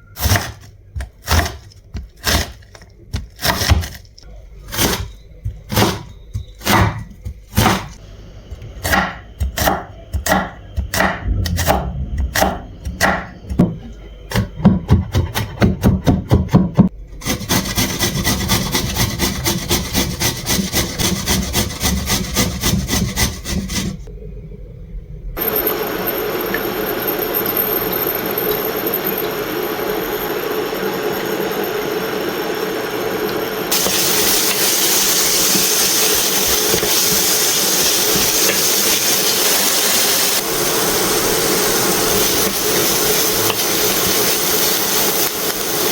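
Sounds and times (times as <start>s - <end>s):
knife chopping on wooden board: 0.2s - 2.6s, 4.8s - 8.0s, 8.8s - 16.9s
steady hiss: 33.7s - 45.9s.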